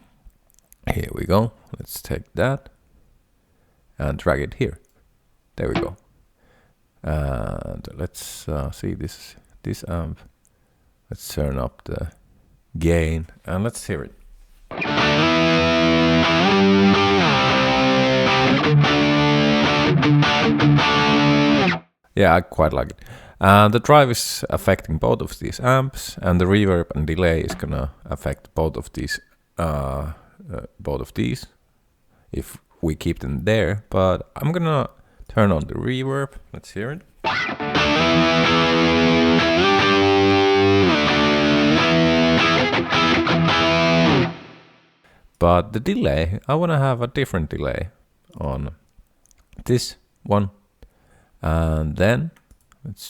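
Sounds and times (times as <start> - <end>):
distorted electric guitar lead: 14.7 - 21.9, 37.2 - 44.8.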